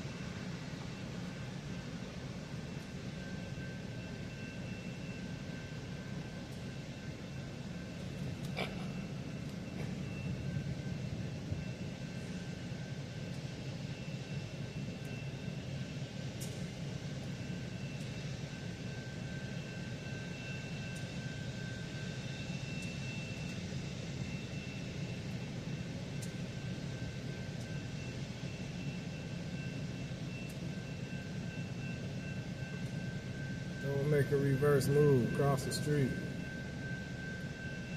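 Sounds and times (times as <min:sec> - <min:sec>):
low engine drone: 0:00.0 - 0:37.9.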